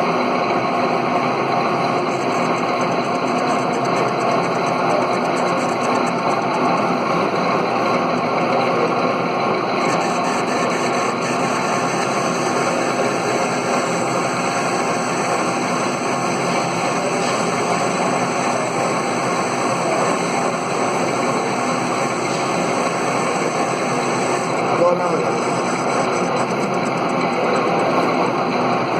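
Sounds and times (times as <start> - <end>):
metal lathe running: 0.0 - 28.9.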